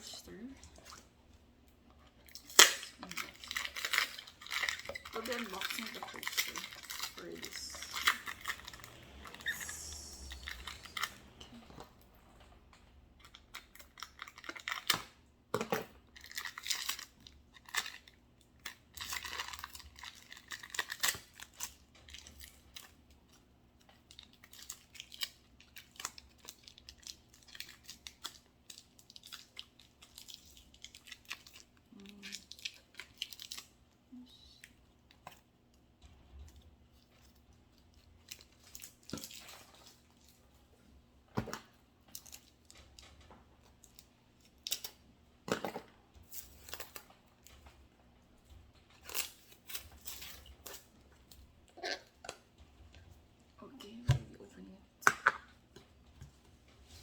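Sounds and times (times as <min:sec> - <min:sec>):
packaging crinkling and tearing: 0:02.2 - 0:15.2, 0:16.1 - 0:33.9, 0:36.5 - 0:40.4, 0:48.9 - 0:51.4.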